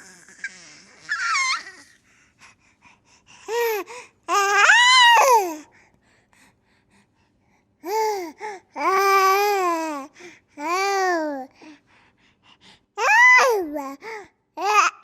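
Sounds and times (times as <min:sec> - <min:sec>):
baby squealing and babbling: 0:00.0 - 0:02.0.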